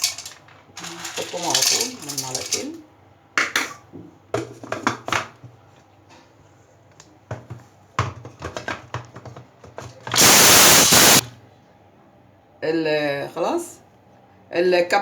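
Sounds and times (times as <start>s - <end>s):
carob pieces clattering in grinder: 0.0s - 2.8s.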